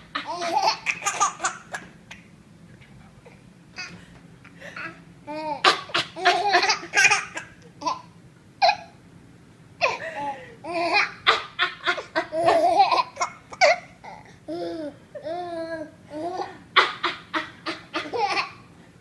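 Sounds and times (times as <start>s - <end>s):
baby laughing: 0.1s - 2.2s, 4.8s - 8.9s, 9.8s - 18.6s.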